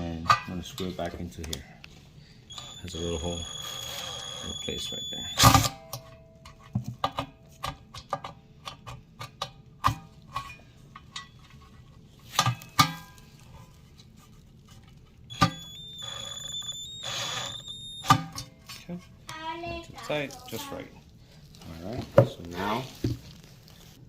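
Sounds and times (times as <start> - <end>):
high-pitched tone: 2.5 - 5.7, 15.3 - 18.3.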